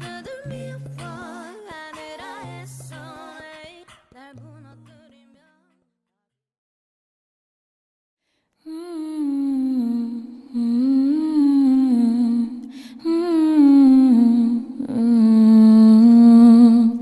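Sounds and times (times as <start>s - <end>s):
person humming a slow melody: 8.6s - 17.0s.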